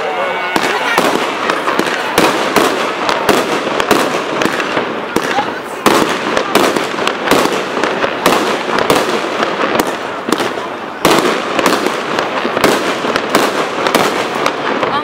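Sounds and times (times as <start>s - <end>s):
fireworks crackling: 0.0s - 15.0s.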